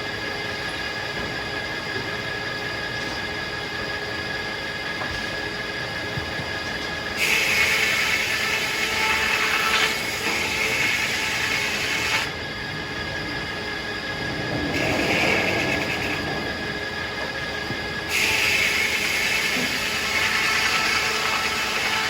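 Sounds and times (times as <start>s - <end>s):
circular saw blade cutting log: 7.2s - 12.3s, 18.1s - 22.0s
steady high whine: 10.0s - 20.4s.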